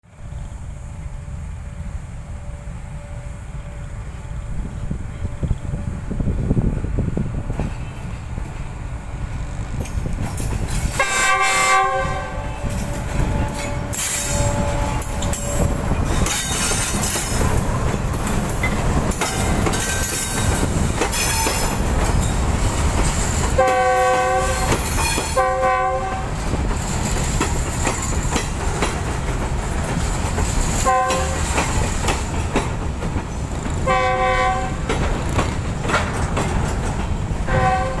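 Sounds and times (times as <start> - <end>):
train wheel and rail noise: 0.0 - 38.0
clickety-clack of rail joints: 4.6 - 38.0
train horn blasts: 10.9 - 15.8, 23.6 - 26.4, 30.8 - 31.6, 33.8 - 34.9, 37.4 - 38.0.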